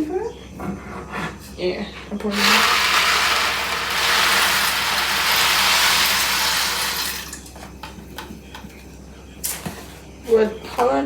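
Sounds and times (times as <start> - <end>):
dry pasta pouring into water: 2.3 - 7.6.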